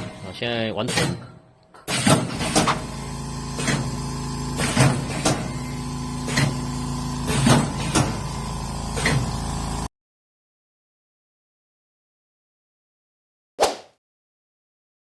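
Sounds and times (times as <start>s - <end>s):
sharp mechanical clacks: 0.8s - 4.0s, 4.6s - 9.4s
packaging machine hum: 1.9s - 9.9s.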